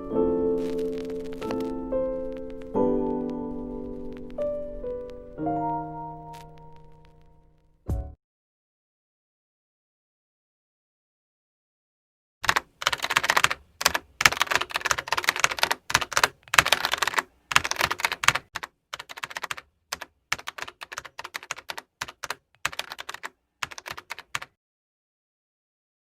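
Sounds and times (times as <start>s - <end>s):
computer keyboard typing: 12.4s - 24.6s.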